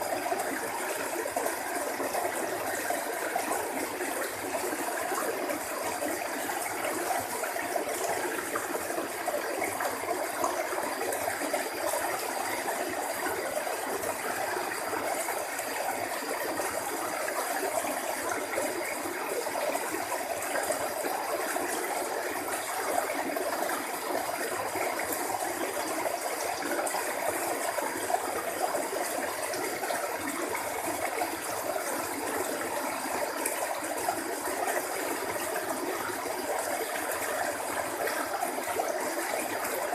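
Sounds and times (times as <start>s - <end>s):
water flowing in a channel: 0.0s - 39.9s.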